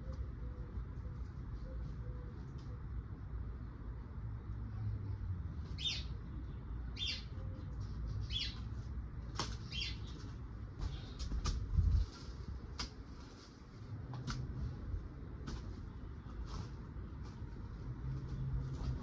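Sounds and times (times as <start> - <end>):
small bird chirping: 5.8 - 6.2, 6.9 - 8.7, 9.6 - 10.3.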